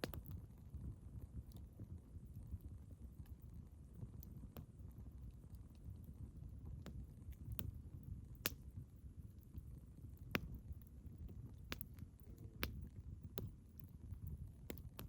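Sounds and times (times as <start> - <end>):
campfire crackling: 3.2 - 8.8, 9.4 - 15.0.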